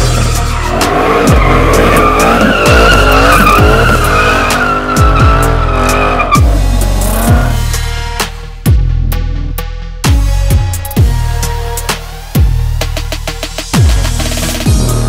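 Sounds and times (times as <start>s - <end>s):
tyres squealing: 0.0s - 6.8s
electronic music with deep bass: 0.0s - 15.0s.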